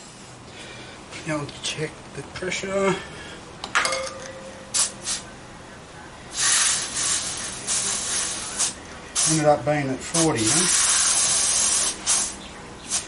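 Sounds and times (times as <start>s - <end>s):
air hissing from tyre valve: 4.8s - 5.2s, 6.3s - 9.4s, 10.5s - 13.0s.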